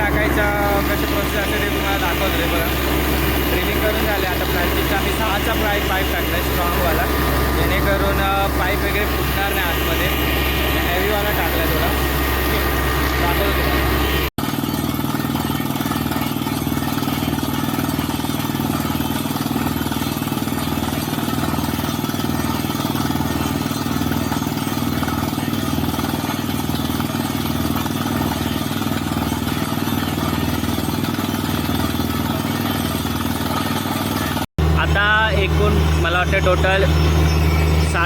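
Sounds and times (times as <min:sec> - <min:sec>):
drilling rig engine throbbing: 0:00.0 - 0:38.0.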